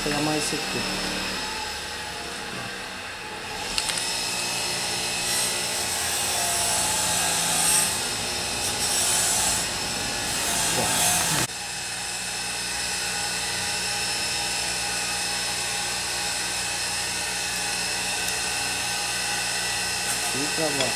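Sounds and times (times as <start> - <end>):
power tool running: 0.0 - 20.9.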